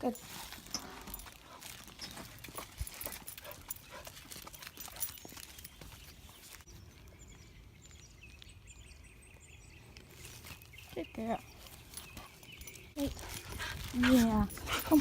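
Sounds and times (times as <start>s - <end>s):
dog paws clicking and rustling: 0.0s - 6.7s, 10.2s - 15.0s.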